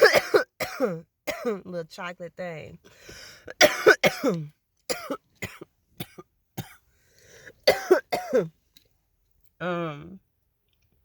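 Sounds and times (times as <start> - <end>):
woman coughing: 0.0 - 1.6, 3.5 - 6.8, 7.6 - 8.5.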